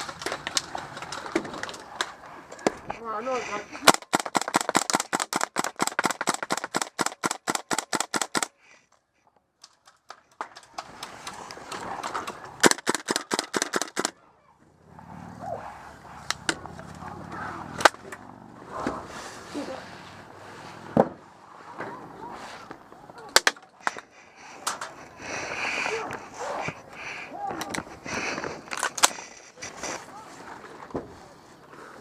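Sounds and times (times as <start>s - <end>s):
airsoft gun firing: 3.8s - 8.6s, 12.6s - 14.1s.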